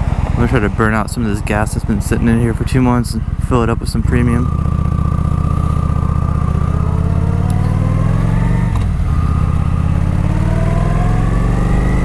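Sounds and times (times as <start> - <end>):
motorcycle engine accelerating: 0.0 - 12.0.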